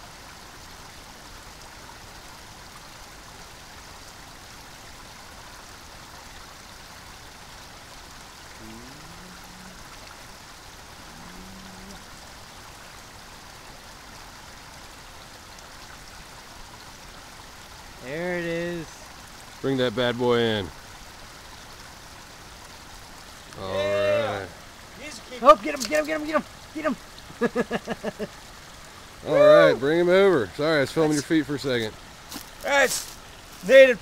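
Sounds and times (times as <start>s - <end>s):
stream water flowing: 0.0s - 34.0s.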